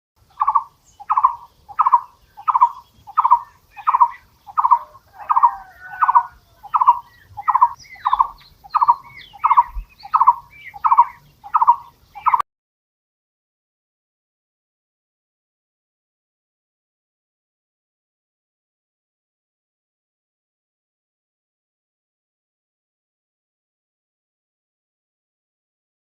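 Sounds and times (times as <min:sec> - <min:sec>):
birds chirping: 0:00.2 - 0:12.4
barbet hooting call: 0:00.4 - 0:12.4.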